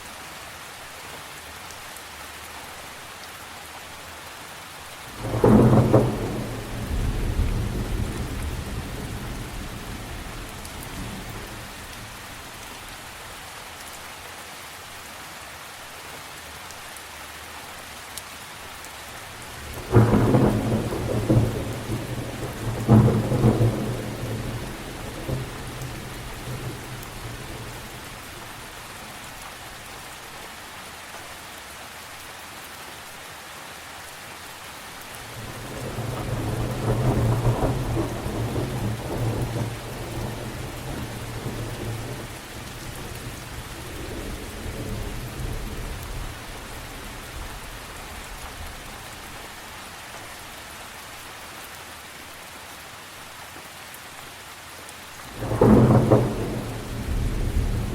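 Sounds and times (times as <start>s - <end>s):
steady rain: 0.0s - 57.9s
loud thunderclap: 5.2s - 11.6s, 19.6s - 28.0s, 35.4s - 42.2s, 55.4s - 57.9s
low rumble of thunder: 5.2s - 12.6s, 19.5s - 29.4s, 35.3s - 49.0s, 55.3s - 57.9s.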